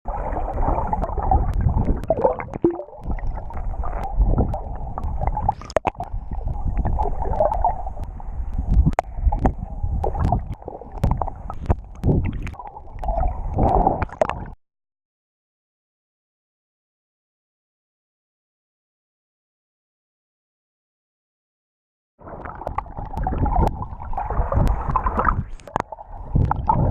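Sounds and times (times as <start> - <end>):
muffled water sloshing and gurgling: 0.1 - 14.6, 22.2 - 26.9.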